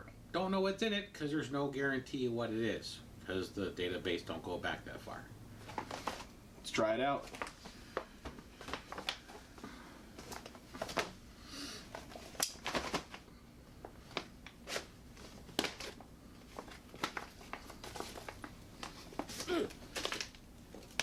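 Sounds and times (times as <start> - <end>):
plastic pouch crinkling: 7.2 - 11.2, 11.9 - 21.0.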